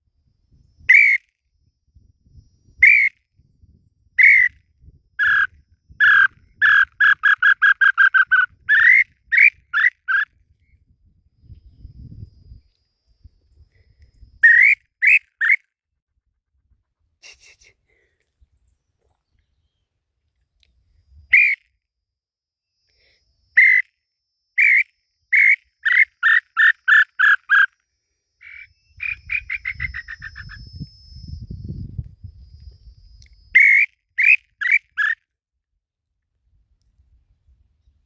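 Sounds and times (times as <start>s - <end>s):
bird whistling song: 0.5s - 4.6s, 5.2s - 10.3s, 13.5s - 15.6s, 21.1s - 21.7s, 23.6s - 23.9s, 24.5s - 27.8s, 28.4s - 35.2s.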